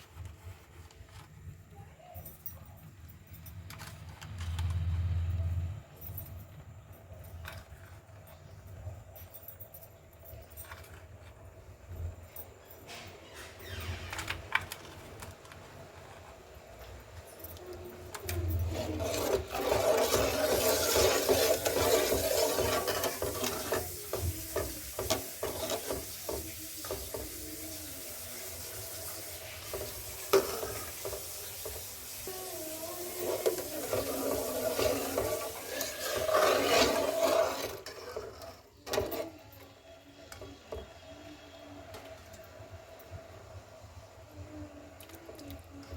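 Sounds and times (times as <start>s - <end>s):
utensil scraping cooking pot: 18.3s - 39.4s.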